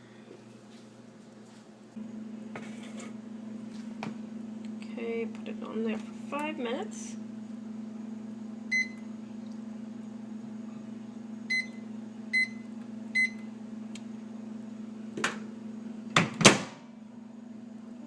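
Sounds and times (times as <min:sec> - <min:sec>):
microwave keypad beeping: 0:08.7 - 0:09.1, 0:11.5 - 0:13.5.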